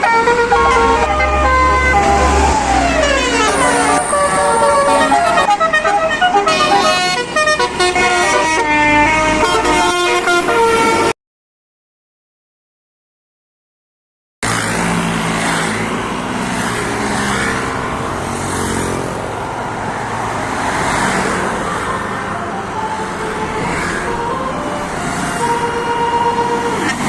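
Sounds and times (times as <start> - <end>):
bus engine drone: 0.0 - 11.1, 14.4 - 27.0
multi-tone bus horn: 0.0 - 11.2, 20.5 - 27.0
road traffic: 0.0 - 11.2, 14.4 - 27.0.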